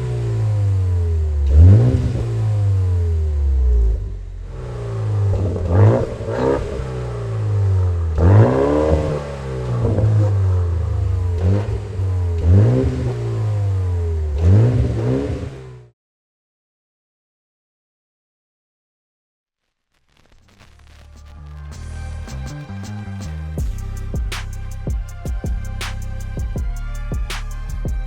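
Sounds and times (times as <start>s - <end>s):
car engine revving: 0.0s - 15.9s.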